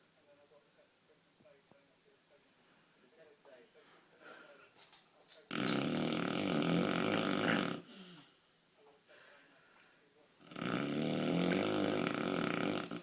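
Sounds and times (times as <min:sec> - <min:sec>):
person snoring loudly: 0:05.5 - 0:08.0, 0:10.4 - 0:13.0.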